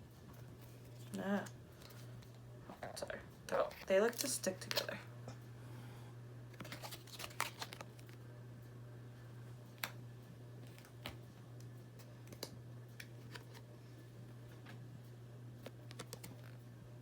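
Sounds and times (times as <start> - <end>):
steady low hum: 0.0 - 17.0
cards clicking and tapping: 15.6 - 16.6.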